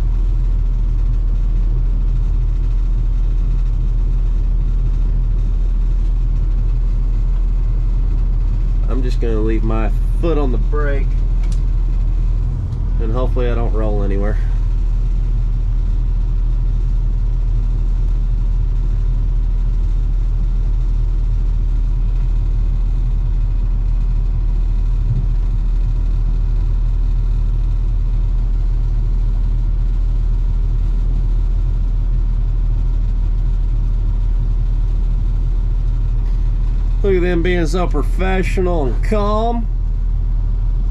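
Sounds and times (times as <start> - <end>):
truck engine idling: 0.0 - 18.0, 23.3 - 28.3, 34.7 - 40.8.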